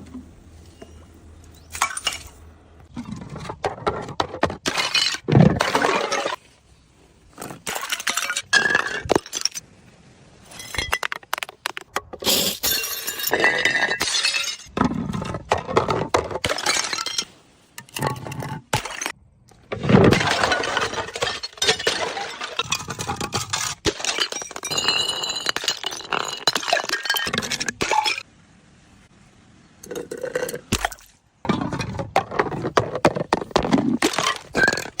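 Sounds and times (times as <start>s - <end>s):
glass clinking and crunching: 0.6s - 2.5s, 3.1s - 6.5s, 7.4s - 9.6s, 10.5s - 19.2s, 19.8s - 28.3s, 29.8s - 35.0s
glass shards rattling: 0.6s - 2.5s, 12.2s - 14.7s, 16.5s - 17.4s, 20.1s - 28.2s
glass bottle smashing: 1.6s - 2.4s, 12.2s - 14.7s, 20.0s - 28.2s, 33.6s - 35.0s.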